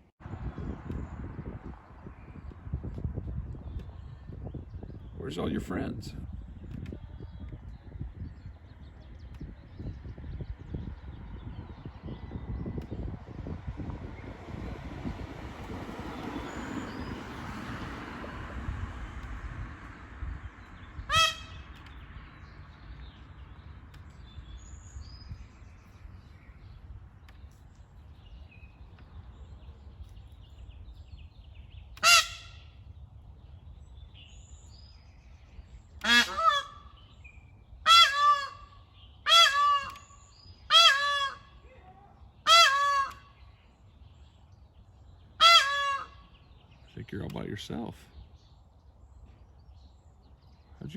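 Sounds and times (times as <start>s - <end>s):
peahen honking calls: 20.9s - 21.8s, 32.0s - 32.8s, 36.0s - 37.1s, 37.8s - 41.6s, 42.2s - 43.5s, 45.3s - 46.4s.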